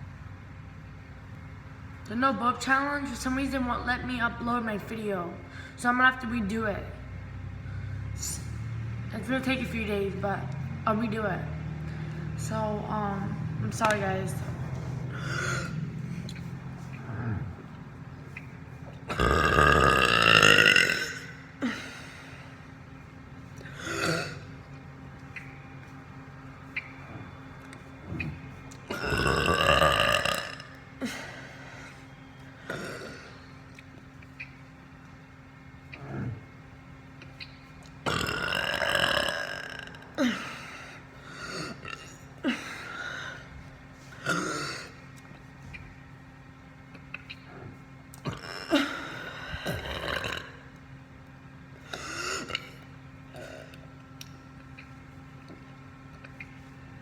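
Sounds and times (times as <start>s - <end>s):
person burping: 15.1s - 15.8s, 19.1s - 22.0s, 23.7s - 24.5s, 28.9s - 31.2s, 32.7s - 33.4s, 38.1s - 40.6s, 44.2s - 45.0s, 48.2s - 50.7s, 51.9s - 53.8s.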